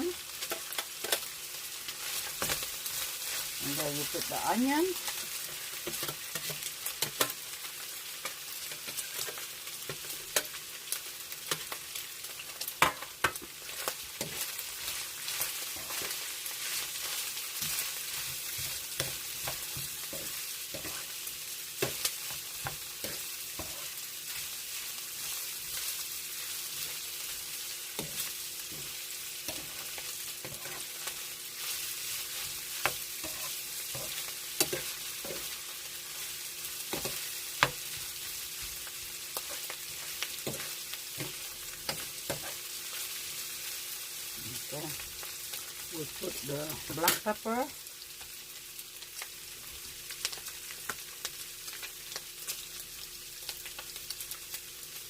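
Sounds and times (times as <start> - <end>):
food sizzling in a frying pan: 0.0 - 55.0
spatula scraping a pan: 4.9 - 7.4, 12.8 - 43.4.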